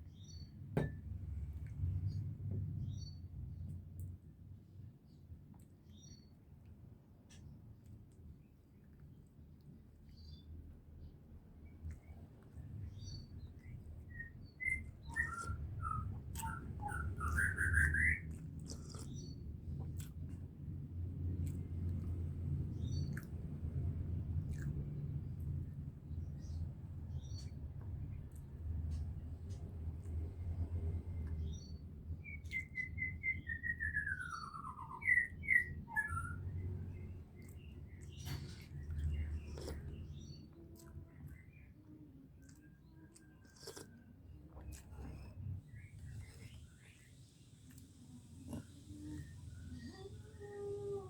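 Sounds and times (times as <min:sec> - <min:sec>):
small birds chirping: 0:00.0 - 0:00.7, 0:05.0 - 0:06.5, 0:08.3 - 0:51.0
low steady rumble: 0:00.0 - 0:51.0
steady low hum: 0:06.6 - 0:51.0
songbird singing: 0:12.8 - 0:19.6, 0:31.1 - 0:42.0.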